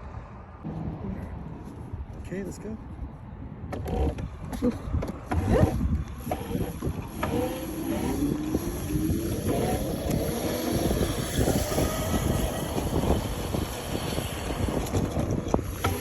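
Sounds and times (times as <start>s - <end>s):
low rumble: 0.0s - 3.7s
electric motor whining: 5.3s - 16.0s.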